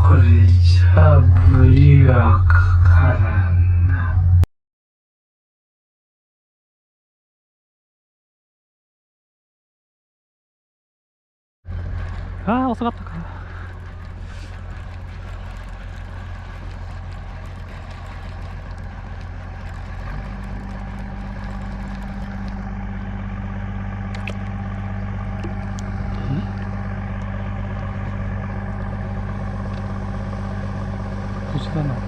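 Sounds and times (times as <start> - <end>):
motor running: 11.7 - 32.0.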